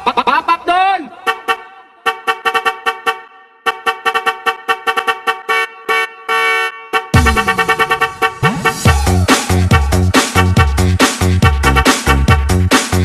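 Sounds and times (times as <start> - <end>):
truck horn blasts: 1.2 - 9.2.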